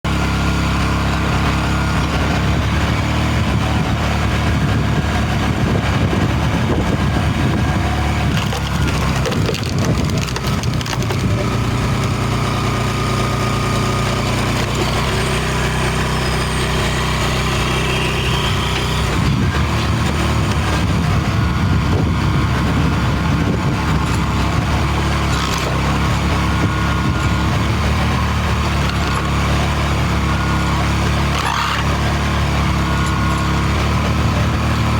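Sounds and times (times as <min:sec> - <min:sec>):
machine engine running: 0:00.1 - 0:34.9
wood cracking and crushing: 0:07.7 - 0:16.3, 0:18.6 - 0:34.9.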